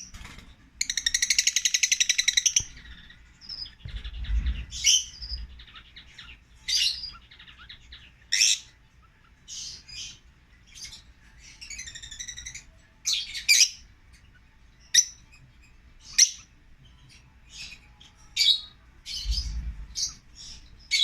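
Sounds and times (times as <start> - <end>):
lovebirds chirping: 0.0 - 21.0
brief low rumble: 3.9 - 5.6, 19.3 - 20.2.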